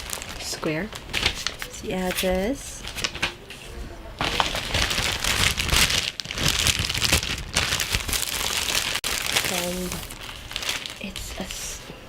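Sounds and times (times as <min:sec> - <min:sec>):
parcel wrapping crinkling: 0:00.0 - 0:03.3, 0:04.2 - 0:11.6.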